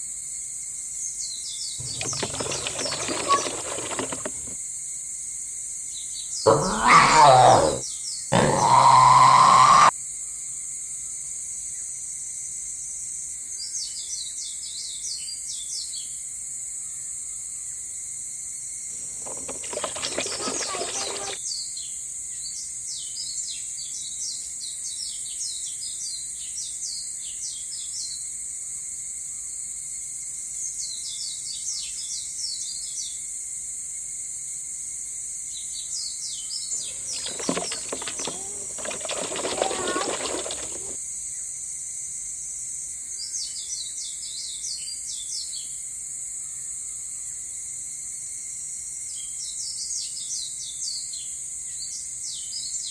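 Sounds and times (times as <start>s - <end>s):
small birds chirping: 1.8s - 4.6s, 19.0s - 21.4s, 36.7s - 41.0s
high-pitched outdoor hiss: 8.4s - 52.9s.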